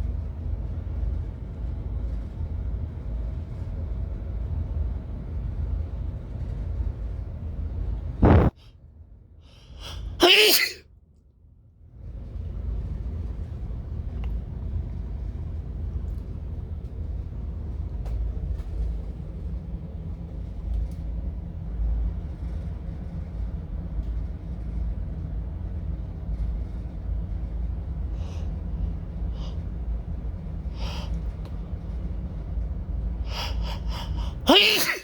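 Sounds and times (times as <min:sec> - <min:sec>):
steady low rumble: 0:00.0 - 0:08.6, 0:12.0 - 0:34.5
person's breath hitching: 0:09.5 - 0:10.8, 0:30.7 - 0:31.2, 0:33.2 - 0:35.0.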